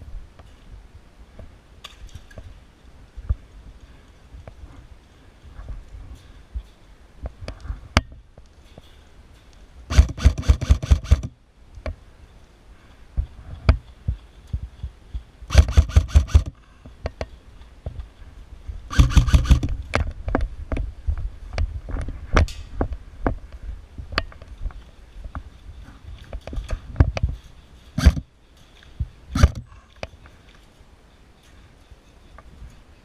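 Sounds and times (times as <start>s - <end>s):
sharp clicks and cracks: 1.8s - 2.6s, 21.5s - 23.4s
airsoft rifle firing bursts: 9.9s - 11.3s, 15.5s - 16.6s, 18.9s - 19.7s, 28.0s - 28.2s.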